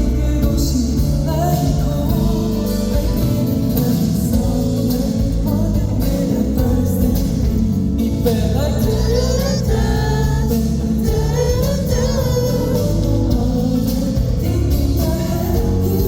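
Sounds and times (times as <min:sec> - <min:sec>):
band with guitar: 0:00.0 - 0:16.0
man singing live: 0:00.0 - 0:16.0.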